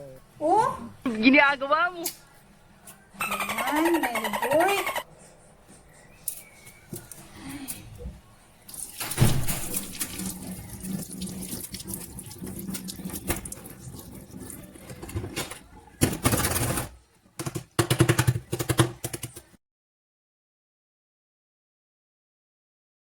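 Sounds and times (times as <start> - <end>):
tap water running into sink: 8.7 - 15.2.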